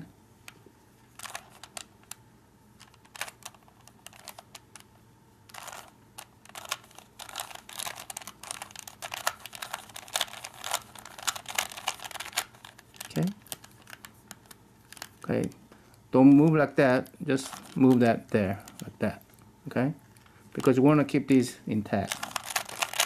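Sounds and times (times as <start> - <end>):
puzzle cube plastic clicks: 2.8 - 4.9, 5.5 - 15.6, 22.0 - 23.0.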